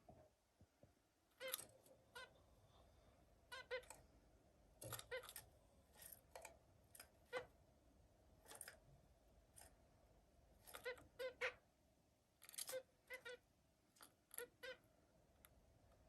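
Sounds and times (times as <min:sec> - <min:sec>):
finch calls: 0:03.5 - 0:03.9, 0:10.7 - 0:11.6, 0:12.6 - 0:13.4.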